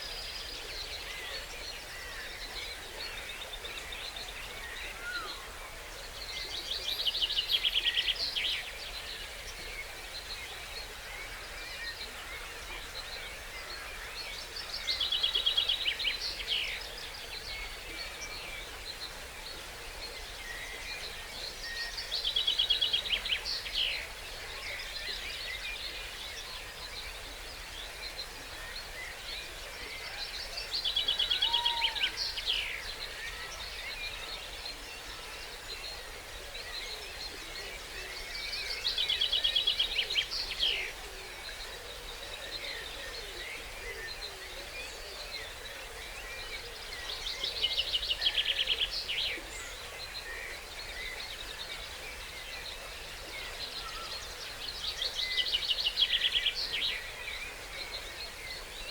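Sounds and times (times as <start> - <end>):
faint calls of other birds: 10.3 - 58.9.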